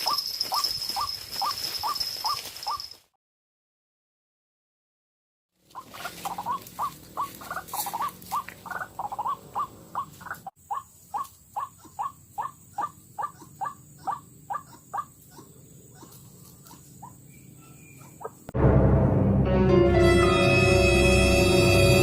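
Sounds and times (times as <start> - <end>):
waterhen calling: 5.7 - 15.2.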